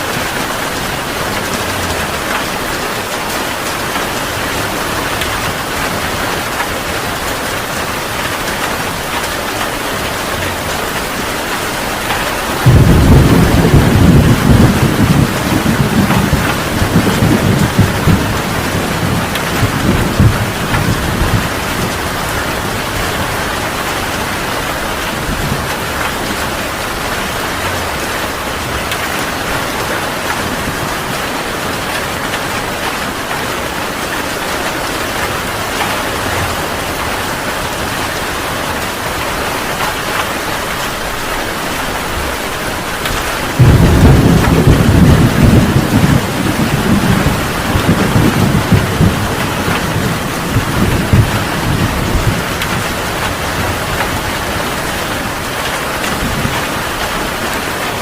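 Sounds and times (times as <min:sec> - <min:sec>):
heavy rain: 0:00.0 - 0:58.0
thunder rumbling: 0:00.1 - 0:58.0.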